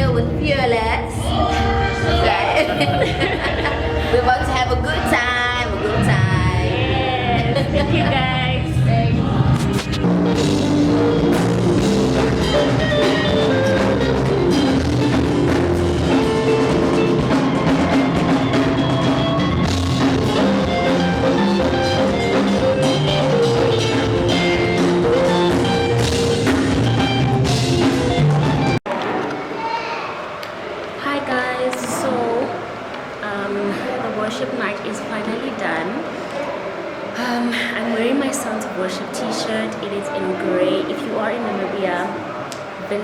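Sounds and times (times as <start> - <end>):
guitar playing: 0.0 - 28.8
drum kit beat: 9.4 - 28.8.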